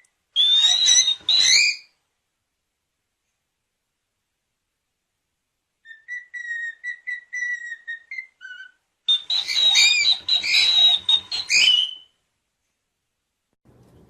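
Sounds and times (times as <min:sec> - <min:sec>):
cockatiel whistling: 0:00.0 - 0:02.0, 0:05.8 - 0:12.2.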